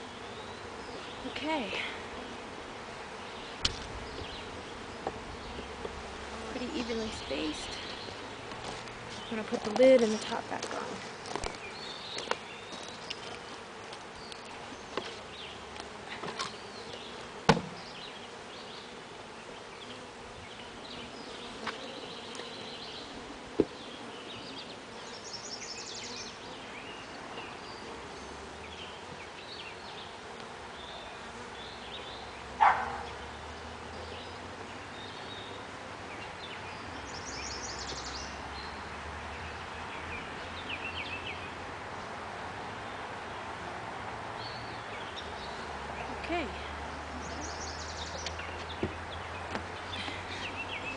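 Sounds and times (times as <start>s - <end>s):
bees buzzing: 0.0s - 50.9s
wooden hive lid knocking: 17.4s - 17.8s, 48.7s - 49.7s.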